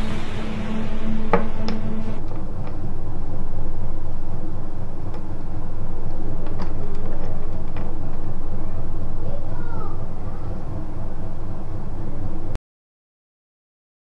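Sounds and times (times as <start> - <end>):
motorcycle engine rumbling: 0.0 - 9.4.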